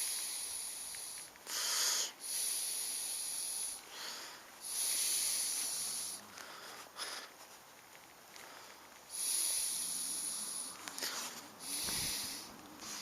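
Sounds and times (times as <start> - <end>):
breath-like air rushes: 9.1 - 13.0.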